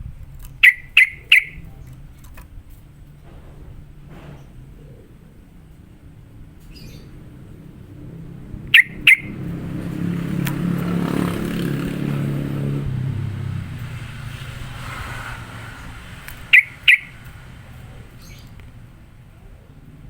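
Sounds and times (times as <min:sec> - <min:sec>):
passing vehicle engine: 0:00.0 - 0:20.0
bird double notes: 0:00.6 - 0:02.0, 0:06.7 - 0:12.0, 0:16.2 - 0:17.4.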